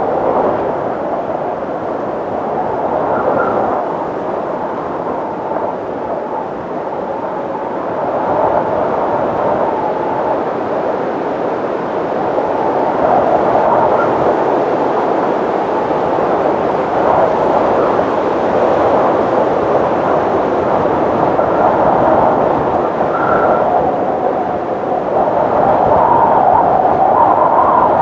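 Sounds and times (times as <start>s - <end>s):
strong wind blowing: 0.0s - 28.0s
wind whistle: 0.0s - 28.0s.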